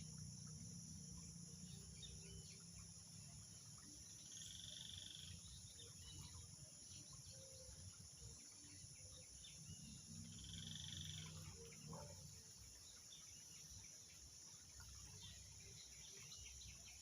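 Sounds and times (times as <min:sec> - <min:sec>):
pulsed insect trill: 0:00.0 - 0:05.6, 0:09.9 - 0:12.1
insects buzzing: 0:00.0 - 0:17.0.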